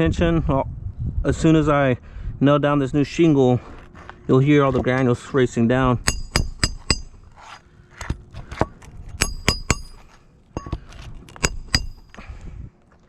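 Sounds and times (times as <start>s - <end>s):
hammer striking roofing nails: 6.0s - 7.2s, 8.0s - 12.2s.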